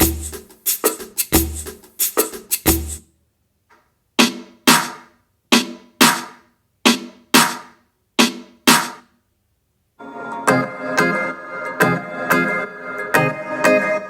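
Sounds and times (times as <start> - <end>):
drum machine percussive hits: 0.0 - 3.0, 4.2 - 9.1.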